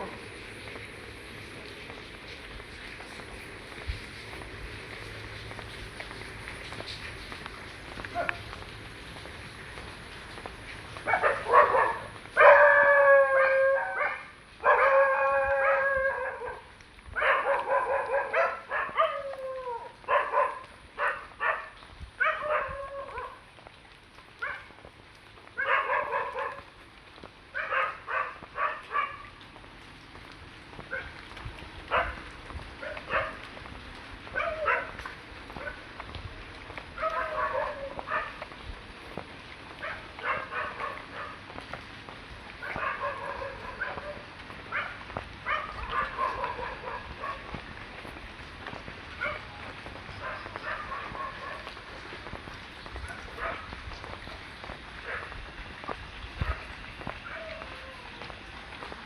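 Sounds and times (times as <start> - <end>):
dogs yelping and barking: 11.0 - 23.4, 25.6 - 26.6, 27.6 - 29.2, 32.8 - 33.4, 34.3 - 34.9, 37.0 - 38.4, 39.8 - 41.4, 42.6 - 47.5, 50.2 - 51.7, 56.5 - 58.0
dogs howling: 11.1 - 21.2, 22.3 - 23.4, 37.0 - 38.4, 42.6 - 47.4, 50.2 - 51.7, 57.2 - 58.3.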